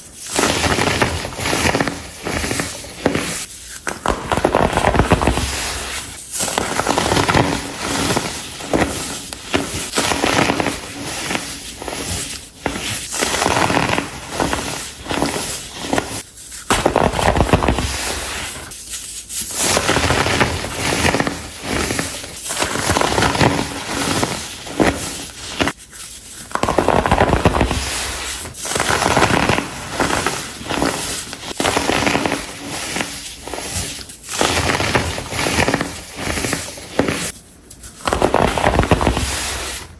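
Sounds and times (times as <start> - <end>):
blocks crunching and crackling: 0.4 - 10.9, 13.2 - 18.7, 26.5 - 37.3, 38.0 - 39.9.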